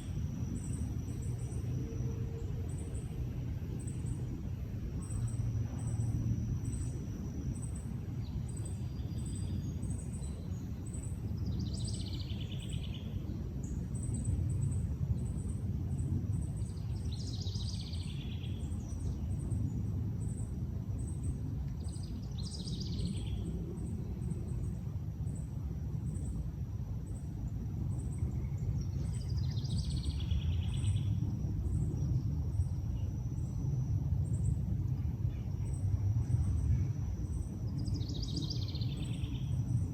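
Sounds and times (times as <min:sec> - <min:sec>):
low background rumble: 0:00.0 - 0:39.9
songbird singing: 0:00.0 - 0:39.9.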